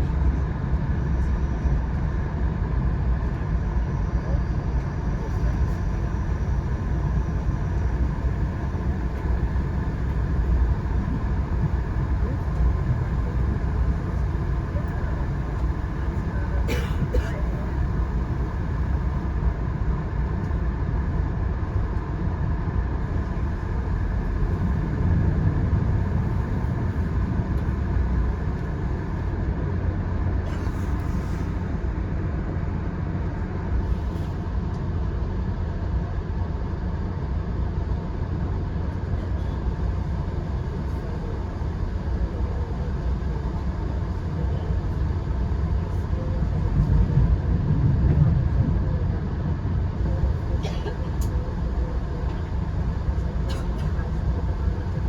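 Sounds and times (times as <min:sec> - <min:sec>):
train rumbling: 0:00.0 - 0:37.8, 0:38.4 - 0:55.0.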